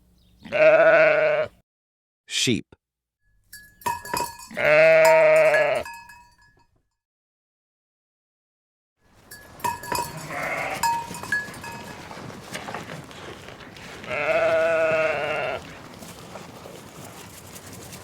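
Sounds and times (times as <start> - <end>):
sheep bleating: 0.4 - 1.6, 4.5 - 5.9, 10.0 - 11.2, 13.5 - 16.0.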